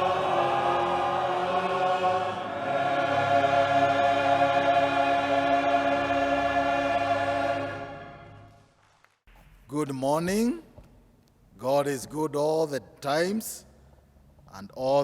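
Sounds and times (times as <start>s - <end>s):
choir singing sustained chords: 0.0s - 8.6s.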